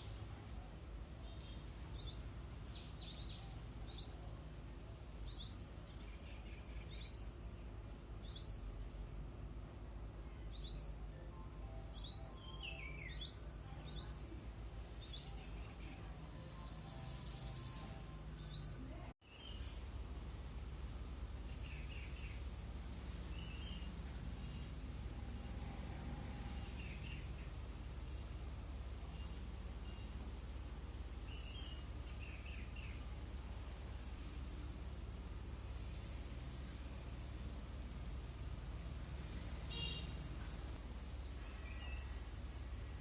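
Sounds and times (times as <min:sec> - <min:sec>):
hummingbird squeaky song: 0:01.3 - 0:04.5, 0:08.2 - 0:08.7, 0:11.8 - 0:19.7.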